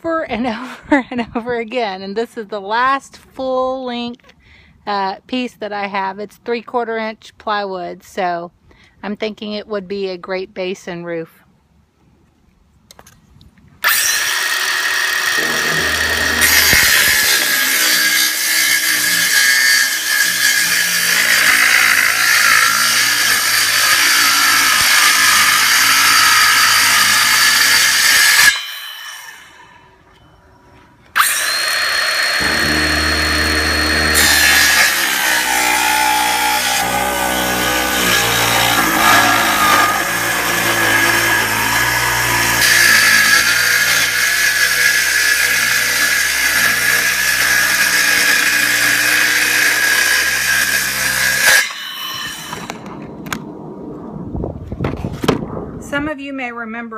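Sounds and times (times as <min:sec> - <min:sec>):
power saw cutting plywood: 0:13.8 - 0:29.8, 0:31.1 - 0:52.9.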